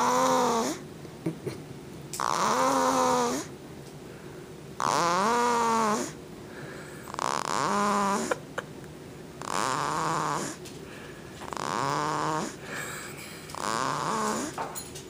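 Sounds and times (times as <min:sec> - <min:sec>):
baby snoring: 0:00.0 - 0:00.8, 0:02.2 - 0:03.5, 0:04.8 - 0:06.2, 0:07.0 - 0:08.4, 0:09.4 - 0:10.6, 0:11.4 - 0:14.6.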